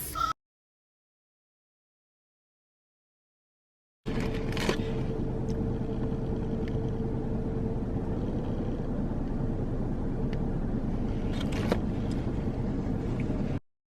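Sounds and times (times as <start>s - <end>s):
faint hum: 4.1s - 13.6s
low rumbling noise: 4.1s - 13.6s.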